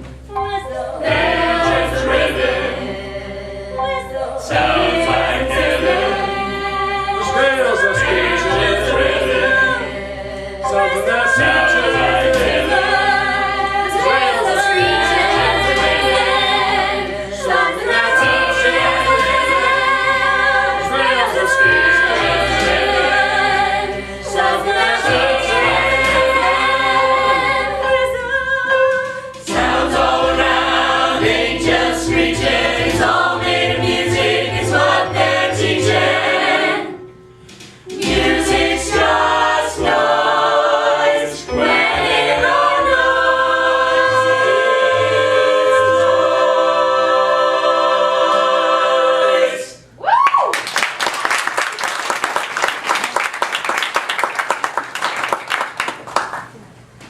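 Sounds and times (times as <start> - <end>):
chorus singing in harmony: 0.3 - 50.0
instrumental accompaniment with beat: 36.7 - 40.5.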